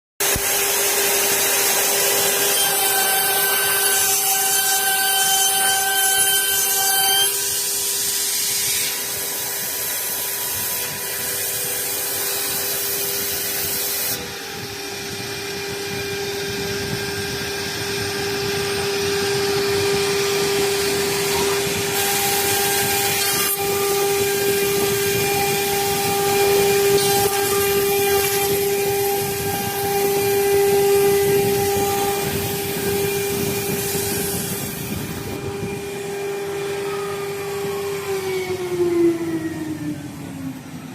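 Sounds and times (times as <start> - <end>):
wood cutting and trimming: 0.2 - 40.6
motor hum: 8.9 - 40.9.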